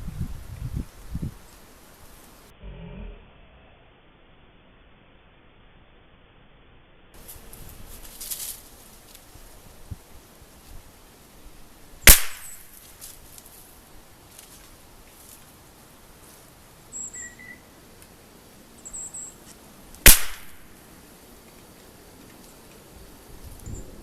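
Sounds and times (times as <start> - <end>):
rifle shots: 12.1 - 12.7, 20.0 - 20.7.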